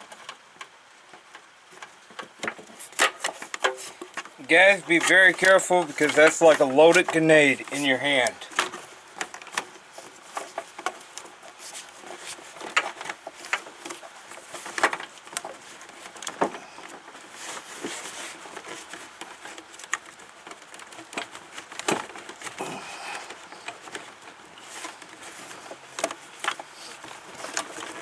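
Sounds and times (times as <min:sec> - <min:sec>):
hand tools clicking and knocking: 0:02.4 - 0:09.7.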